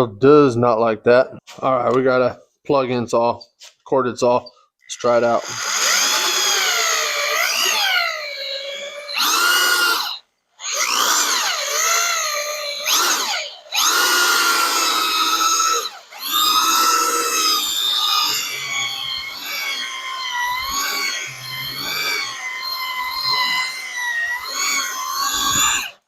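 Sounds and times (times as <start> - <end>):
drill whining through rubber: 4.8 - 26.0.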